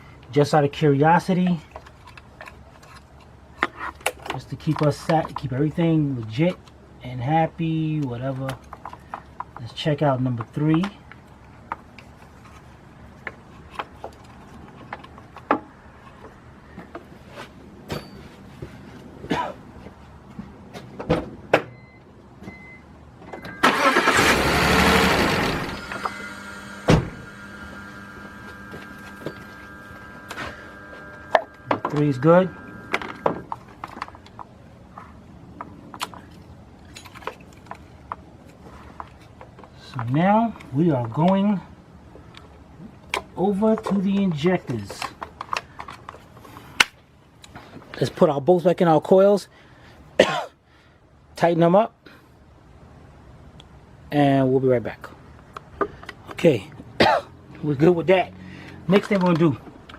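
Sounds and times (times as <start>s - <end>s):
clicks and knocks of parts handled: 1.4s - 5.8s, 8.0s - 9.7s, 10.3s - 17.2s, 32.8s - 41.4s, 42.2s - 48.0s, 55.4s - 56.9s, 58.6s - 59.9s
low steady hum: 21.6s - 48.0s.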